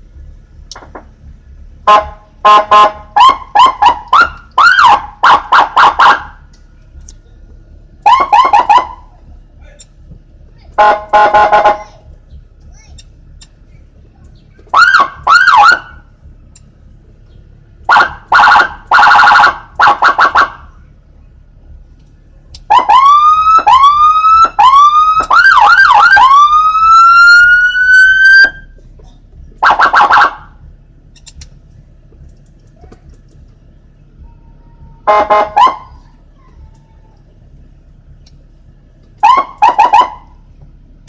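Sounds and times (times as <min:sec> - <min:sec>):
electronic siren horn blasts: 0:01.8 - 0:06.3, 0:10.8 - 0:11.8, 0:35.0 - 0:36.0
rising siren whoops: 0:03.2 - 0:06.3, 0:14.7 - 0:16.0, 0:22.7 - 0:28.7, 0:34.2 - 0:36.0, 0:39.2 - 0:40.4.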